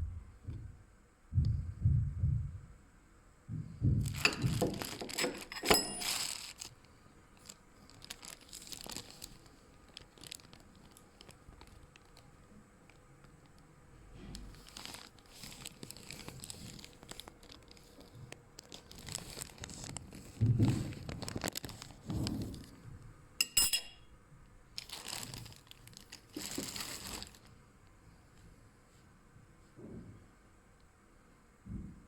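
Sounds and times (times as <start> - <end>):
parts rustling and knocking: 3.9 - 6.7
clinks: 5.2 - 6.4, 23.4 - 24.0
bright metallic ring: 5.5 - 6.4, 23.4 - 24.1.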